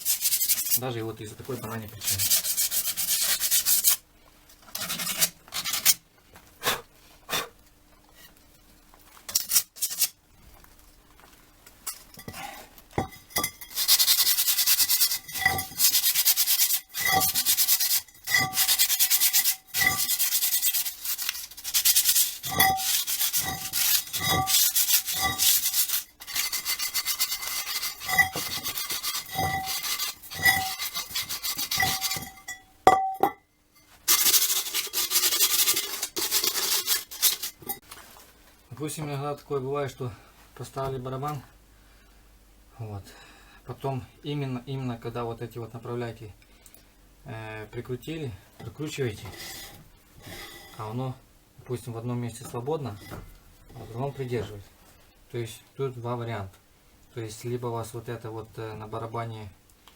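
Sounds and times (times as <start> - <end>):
hand sanding rasping strokes: 0.0 - 0.8, 2.0 - 4.0, 13.7 - 32.3, 34.1 - 37.6.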